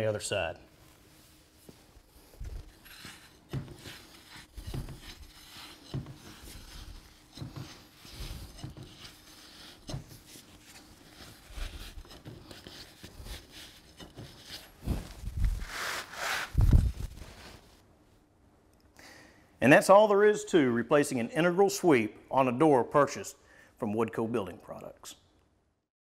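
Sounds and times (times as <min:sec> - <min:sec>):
dull knocks and rubbing: 0:02.3 - 0:17.5.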